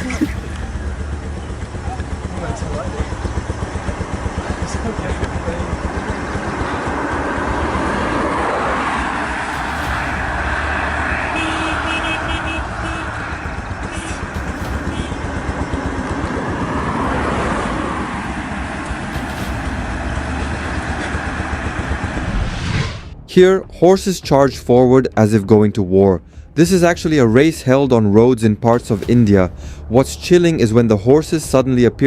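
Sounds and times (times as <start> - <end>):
road traffic noise: 0.0 - 23.2.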